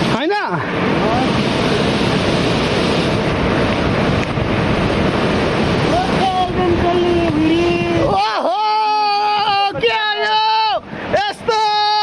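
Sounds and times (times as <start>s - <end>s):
waterfall roaring: 0.0s - 12.0s
wind buffeting microphone: 0.0s - 12.0s
person calling out: 5.9s - 12.0s.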